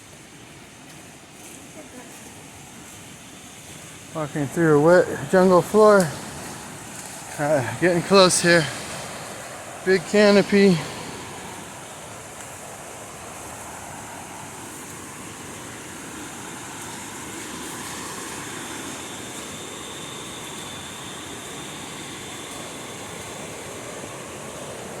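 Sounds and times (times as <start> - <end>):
water rushing in a stream: 0.0 - 25.0.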